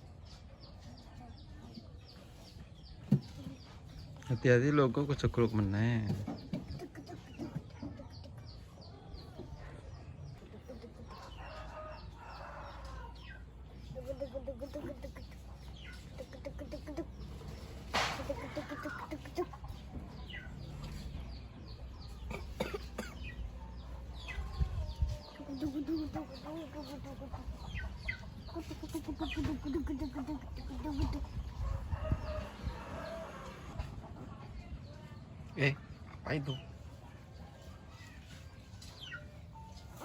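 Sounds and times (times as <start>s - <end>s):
chickens clucking: 0.0s - 40.0s
sharp knock: 17.9s - 18.3s.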